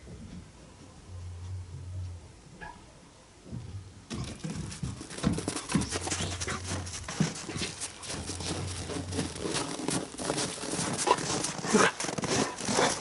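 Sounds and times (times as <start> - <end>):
dogs scuffling: 4.1 - 13.0.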